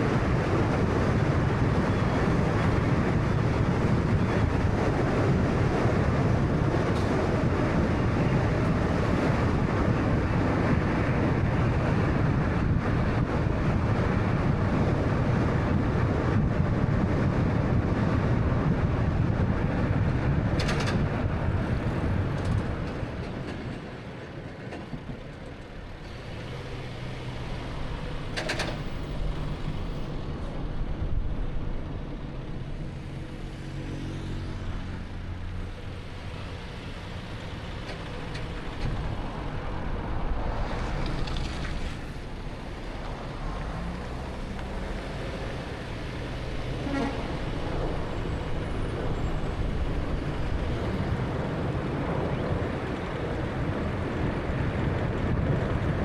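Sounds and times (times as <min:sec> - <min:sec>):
car road and tyre noise: 0:00.0 - 0:56.0.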